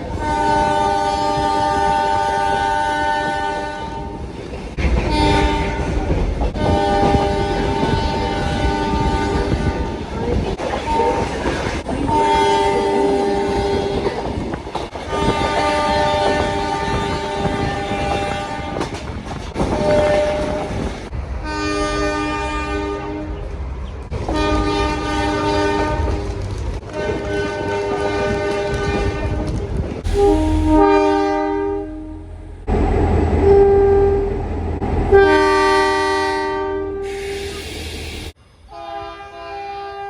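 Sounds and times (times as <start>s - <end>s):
low rumble of train: 0.0s - 40.0s
locomotive air horn chord: 0.2s - 4.2s, 21.4s - 23.4s, 30.1s - 32.8s, 33.4s - 34.4s, 35.1s - 37.6s, 38.7s - 40.0s.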